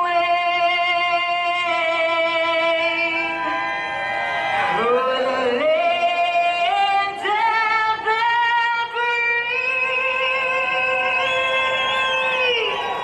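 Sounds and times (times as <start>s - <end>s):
woman singing sustained notes: 4.7s - 12.8s.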